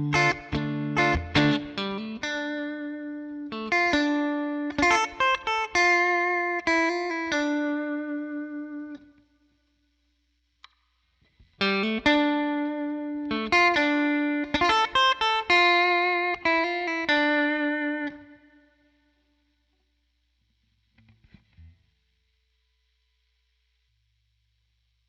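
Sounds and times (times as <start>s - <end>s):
clean electric guitar notes: 0.0s - 9.2s.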